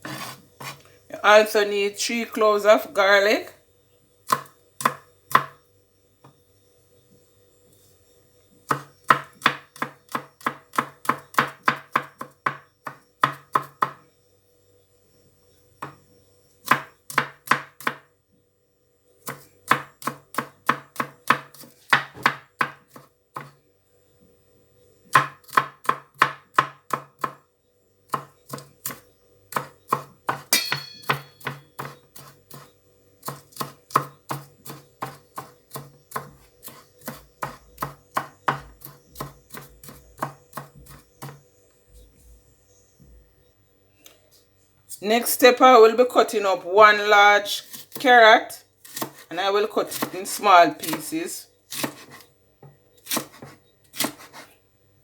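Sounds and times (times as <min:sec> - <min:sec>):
knife chopping on cutting board: 0:00.0 - 0:00.8, 0:04.3 - 0:05.6, 0:08.7 - 0:14.0, 0:16.7 - 0:18.0, 0:19.3 - 0:23.6, 0:25.1 - 0:27.4, 0:28.1 - 0:41.4, 0:48.8 - 0:49.3, 0:49.9 - 0:52.2, 0:53.0 - 0:54.5.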